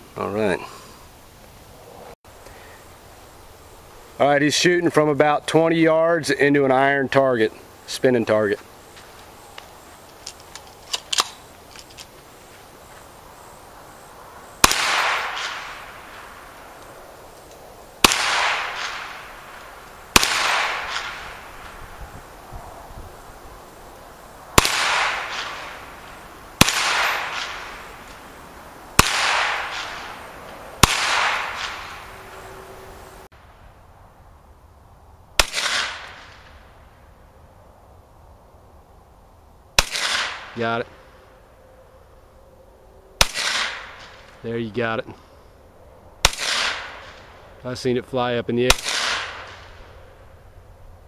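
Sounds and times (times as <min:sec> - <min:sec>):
gunshots with echo: 0:14.6 - 0:16.4, 0:18.0 - 0:21.7, 0:24.6 - 0:28.0, 0:29.0 - 0:32.2, 0:35.4 - 0:36.4, 0:43.2 - 0:44.2, 0:46.2 - 0:47.2, 0:48.7 - 0:49.8.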